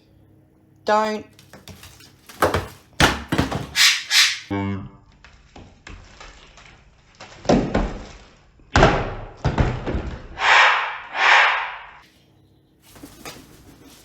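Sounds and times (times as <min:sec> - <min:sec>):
harsh rushing bursts: 0:10.4 - 0:12.0
loud bangs: 0:10.4 - 0:12.0.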